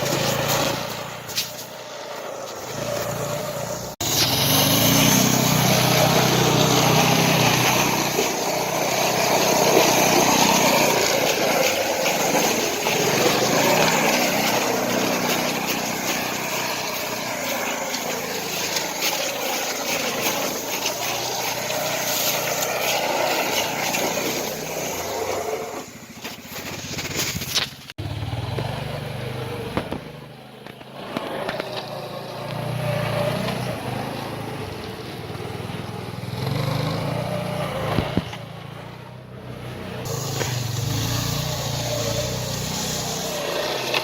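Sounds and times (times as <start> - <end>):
snowmobile engine revving: 0.0 - 44.0.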